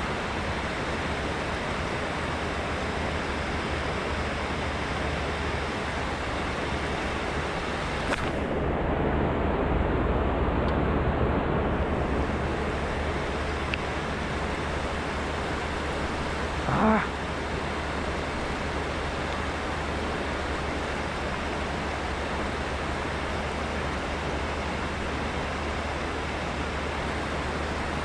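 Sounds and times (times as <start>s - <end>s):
river flowing: 7.8s - 8.5s, 11.9s - 28.0s
faint clicks: 13.7s - 13.9s.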